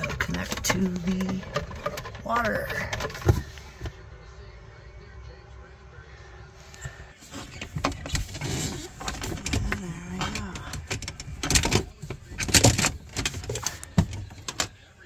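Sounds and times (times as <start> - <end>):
parts clicking and knocking: 0.0 - 3.9, 7.3 - 15.0.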